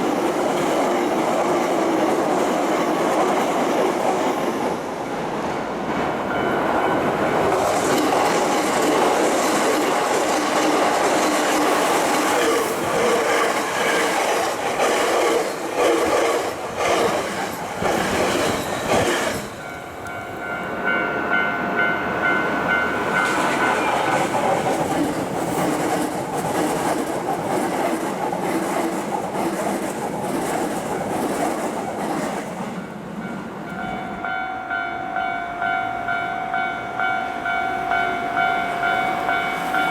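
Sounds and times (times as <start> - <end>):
train rumble: 0.0 - 39.9
level-crossing warning bell: 5.0 - 14.3, 18.3 - 24.8, 32.8 - 39.9
wheels clacking over rail joints: 6.0 - 20.2, 23.0 - 34.4.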